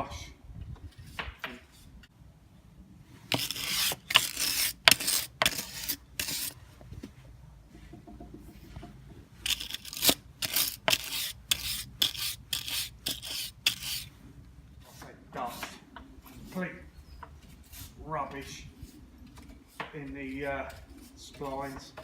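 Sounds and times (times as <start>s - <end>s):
wire brush scrubbing metal: 3.3s - 6.6s, 9.4s - 14.1s.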